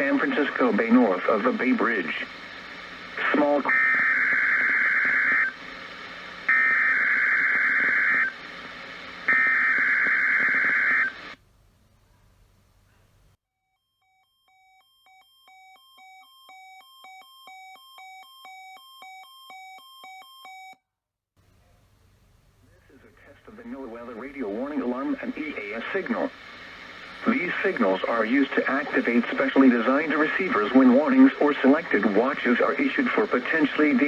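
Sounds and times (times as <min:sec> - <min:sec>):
harsh digital data bursts: 0:06.5 - 0:08.4, 0:09.3 - 0:11.2.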